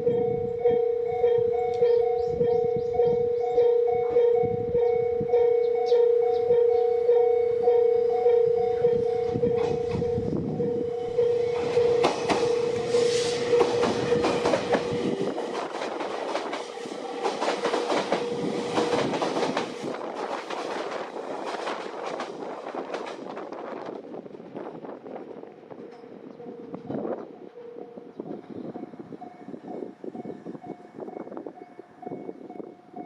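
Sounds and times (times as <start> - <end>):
level-crossing alarm dinging: 0.0 - 15.8, 16.8 - 19.3
train wheels clattering: 11.5 - 24.0.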